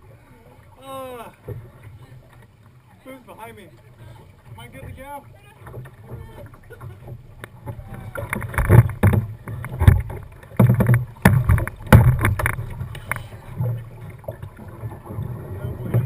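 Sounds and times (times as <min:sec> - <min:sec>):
kayak paddle splashing: 0:00.0 - 0:16.0
water rumbling against boat: 0:00.0 - 0:16.0.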